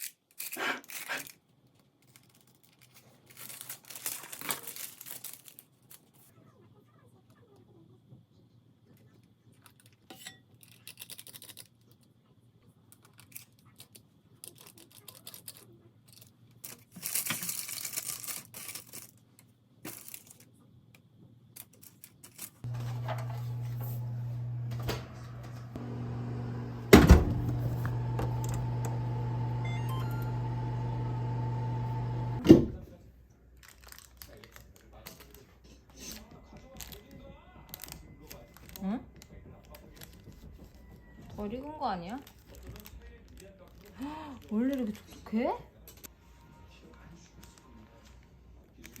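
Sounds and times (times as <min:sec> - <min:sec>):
microwave clunk: 0:22.7 - 0:32.8
microwave oven humming: 0:22.7 - 0:32.8.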